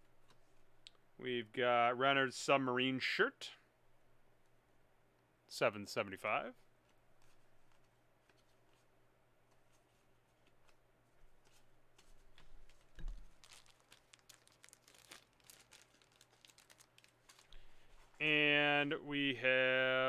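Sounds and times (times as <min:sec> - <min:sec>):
trading cards rustling and crinkling: 0:06.8 - 0:08.9, 0:09.5 - 0:18.3.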